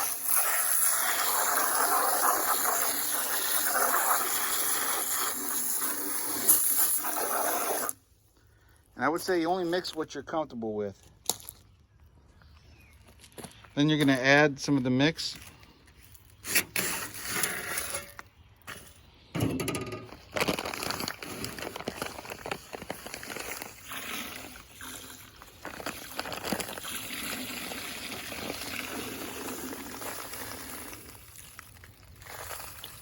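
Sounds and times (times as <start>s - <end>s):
sand pouring into water: 0.0s - 8.0s, 20.2s - 33.0s.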